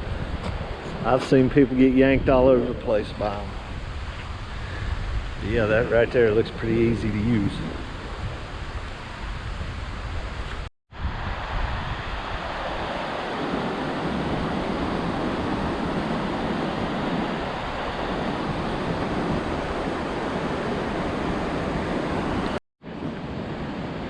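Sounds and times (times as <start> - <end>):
water rushing: 11.0 - 24.0.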